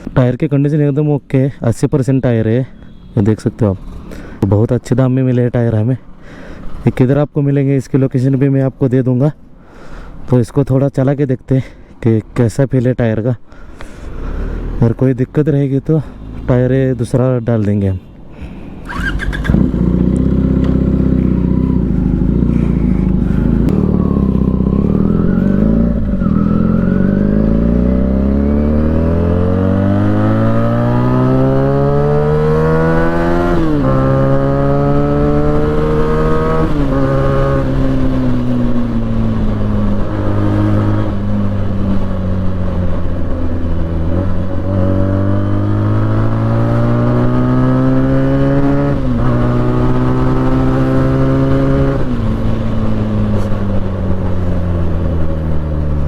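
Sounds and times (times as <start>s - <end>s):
motorcycle engine accelerating: 18.8s - 56.0s.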